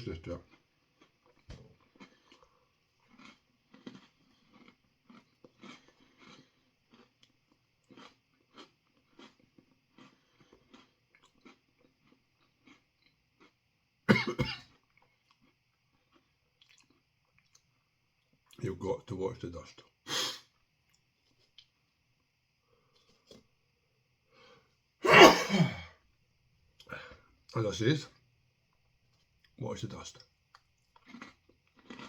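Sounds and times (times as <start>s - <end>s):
person chewing crunchy food: 0.1s - 13.7s, 14.5s - 18.3s, 30.2s - 32.0s
person coughing: 14.1s - 14.7s, 25.0s - 25.9s.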